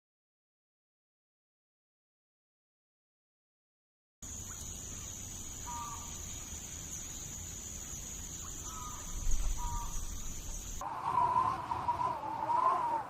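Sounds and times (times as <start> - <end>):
bird calls: 4.2 - 13.0.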